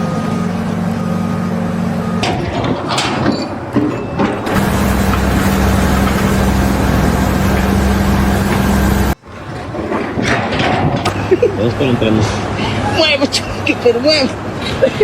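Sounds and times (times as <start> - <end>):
machine running with low hum: 0.0 - 9.2.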